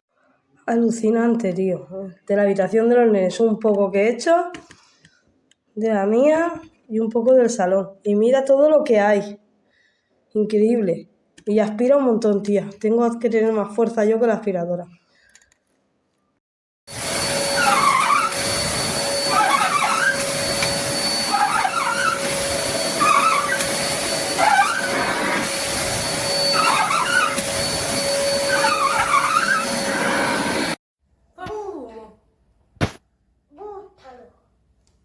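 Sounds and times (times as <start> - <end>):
vacuum cleaner whining: 16.9 - 30.8.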